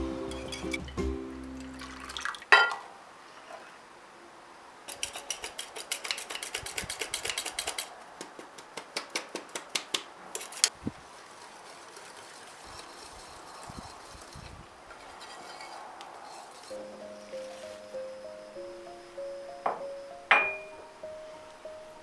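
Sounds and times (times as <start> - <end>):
background music: 0.0 - 2.1, 16.7 - 22.0
kitchenware clinking: 0.1 - 2.9, 19.7 - 20.8
metal utensil tapping a bowl: 20.3 - 20.7.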